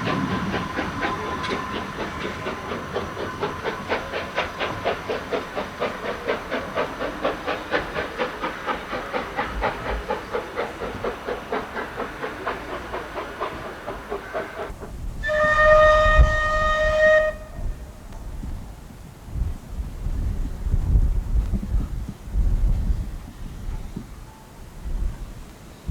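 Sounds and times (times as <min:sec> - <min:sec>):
steam locomotive chuffing: 0:00.0 - 0:25.7
steam whistle blast: 0:15.2 - 0:17.9.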